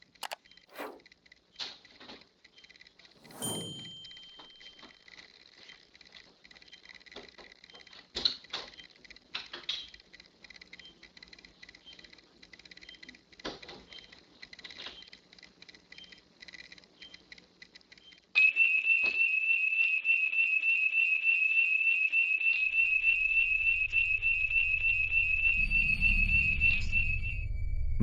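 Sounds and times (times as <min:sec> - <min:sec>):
faint ticking and clicks: 0:00.0 - 0:03.3, 0:04.4 - 0:18.4
security alarm warbling tone: 0:03.2 - 0:04.4, 0:22.5 - 0:28.0
low rumble: 0:22.9 - 0:28.0.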